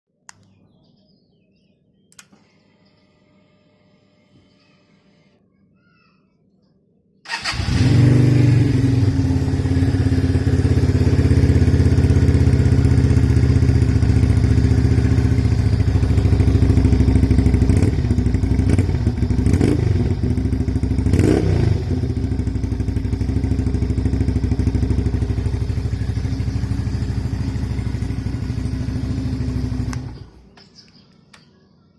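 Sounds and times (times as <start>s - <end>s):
motorcycle engine idling: 7.3s - 30.5s
engine revving blips: 25.0s - 30.5s.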